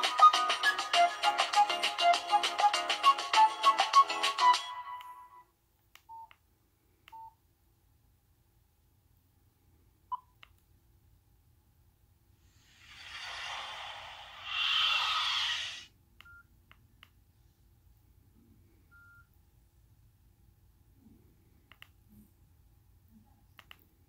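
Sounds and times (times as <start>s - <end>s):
rushing hiss: 12.5s - 15.9s.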